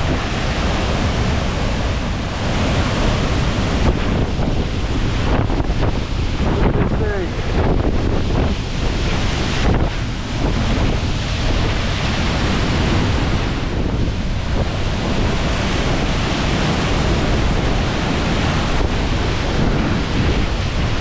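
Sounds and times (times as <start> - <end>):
waterfall crashing: 0.0 - 4.2
wind buffeting microphone: 0.0 - 21.0.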